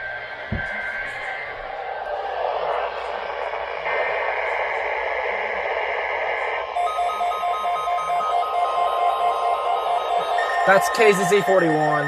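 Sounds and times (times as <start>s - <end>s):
rapid pulsed beeping alarm: 0.0s - 2.2s, 6.0s - 12.0s
radio static: 0.0s - 6.8s
raspy buzzing data tone: 6.8s - 12.0s.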